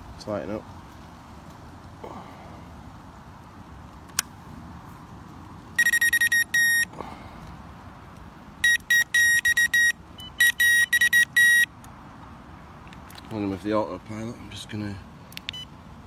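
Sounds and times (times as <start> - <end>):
bite alarm beeping: 5.8 - 6.9, 8.6 - 11.7.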